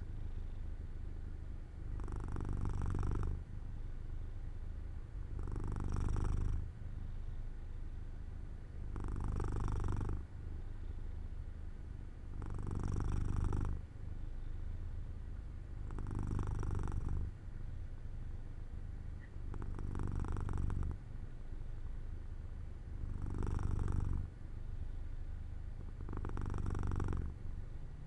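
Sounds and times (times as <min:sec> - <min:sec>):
cat purring: 0:00.0 - 0:04.1, 0:05.2 - 0:06.8, 0:08.8 - 0:11.0, 0:12.2 - 0:13.9, 0:15.7 - 0:17.5, 0:19.2 - 0:22.1, 0:22.9 - 0:28.0.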